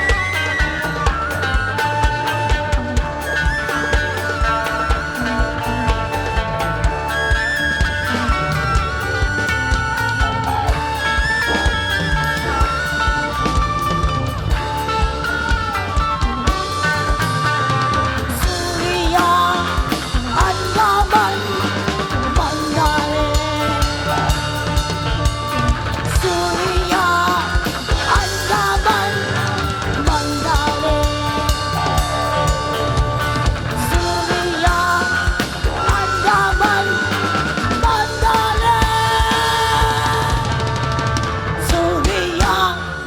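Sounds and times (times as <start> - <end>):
bass guitar: 0.0 - 43.0
drum kit: 0.0 - 43.0
electric guitar: 0.0 - 43.0
pitch-bending lead guitar line: 0.0 - 43.0.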